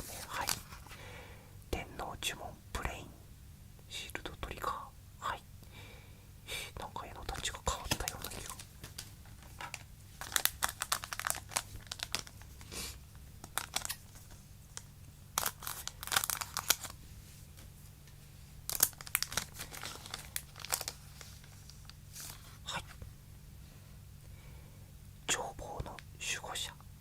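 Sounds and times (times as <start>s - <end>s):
foil wrapper crinkling and tearing: 7.9s - 12.8s, 13.4s - 17.0s, 18.7s - 22.5s.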